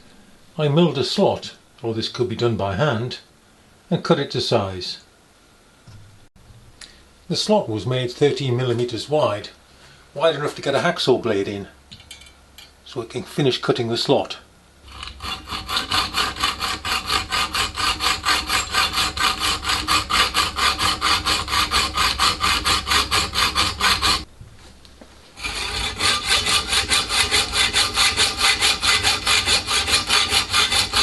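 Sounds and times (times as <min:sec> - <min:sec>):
hacksaw cutting metal plate: 0:14.9 - 0:24.3, 0:25.4 - 0:31.0.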